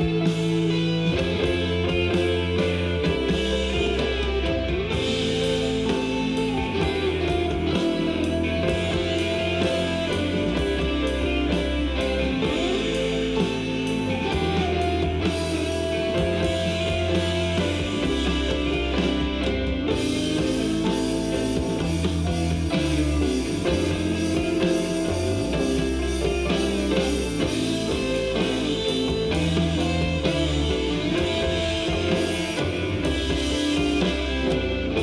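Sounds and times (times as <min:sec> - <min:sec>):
rock music instrumental: 0:00.0 - 0:35.0.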